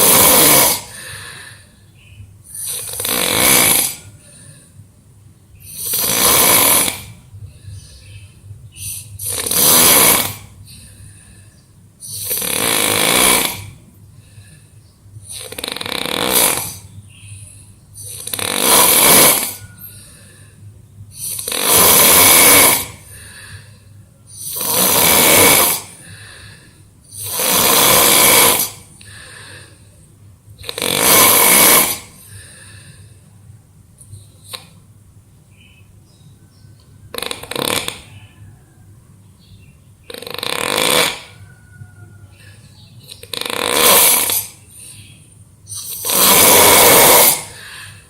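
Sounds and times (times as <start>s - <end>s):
person snoring loudly: 0.0s - 1.6s, 2.5s - 4.6s, 5.6s - 7.3s, 9.0s - 11.0s, 12.0s - 13.8s, 15.2s - 16.9s, 18.0s - 20.3s, 21.2s - 23.6s, 24.3s - 29.7s, 30.6s - 32.8s, 37.1s - 38.7s, 40.1s - 44.7s, 45.7s - 48.0s.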